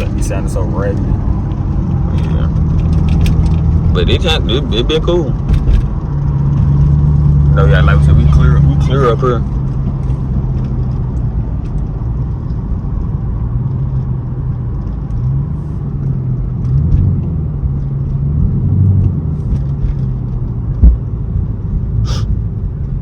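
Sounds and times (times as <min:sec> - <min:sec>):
car engine and road rumble: 0:00.0 - 0:23.0
thump: 0:20.8 - 0:21.0.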